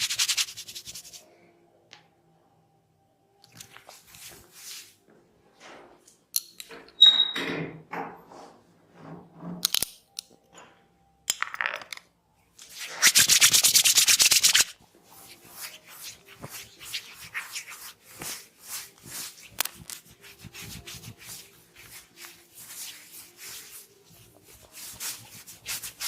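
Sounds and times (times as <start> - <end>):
hands rubbing hair and scalp: 0.0 - 1.2, 3.6 - 5.0, 12.7 - 26.0.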